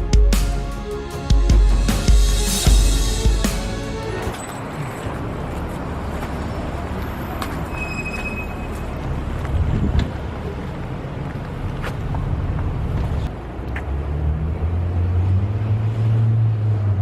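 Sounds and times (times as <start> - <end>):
city traffic rumble: 0.0 - 17.0.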